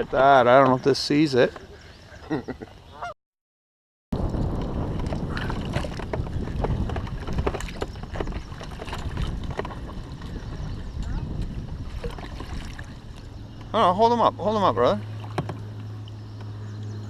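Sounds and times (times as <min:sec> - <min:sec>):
water lapping around a kayak: 0:00.0 - 0:03.1, 0:04.2 - 0:17.0
wind on microphone: 0:04.2 - 0:14.0.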